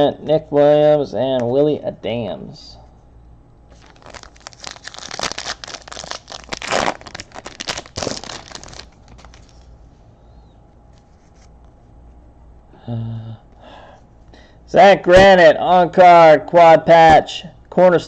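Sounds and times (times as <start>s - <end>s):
foil wrapper crinkling and ripping: 3.7s - 9.7s.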